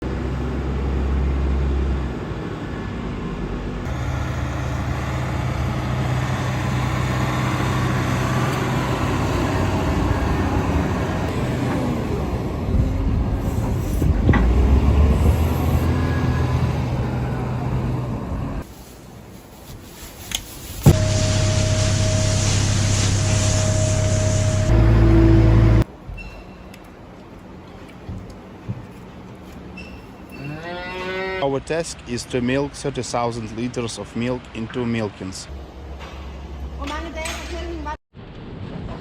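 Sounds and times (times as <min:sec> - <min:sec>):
machinery hum with engine droning: 0:00.1 - 0:19.3, 0:20.8 - 0:26.0.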